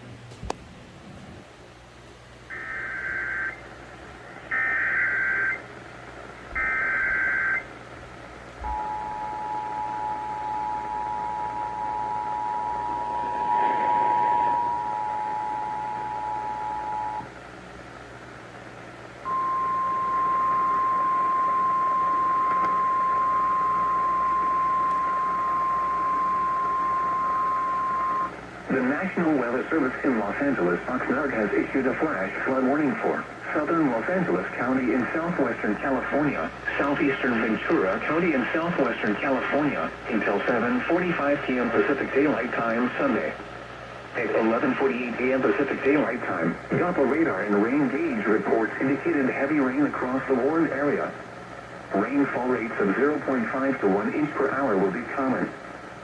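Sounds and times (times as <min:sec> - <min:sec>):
two-tone attention signal: 0:08.6 - 0:17.3, 0:19.3 - 0:28.3
steady alert tone: 0:11.8 - 0:17.2.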